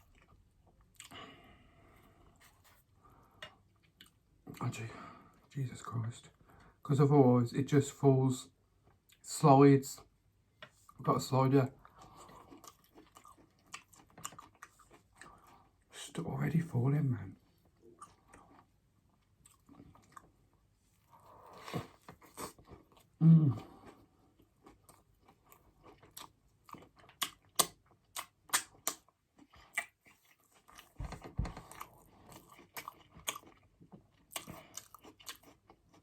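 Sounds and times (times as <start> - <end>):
crunchy chewing: 11.8 - 15.8, 17.6 - 36.0
low voice hum: 23.2 - 23.8.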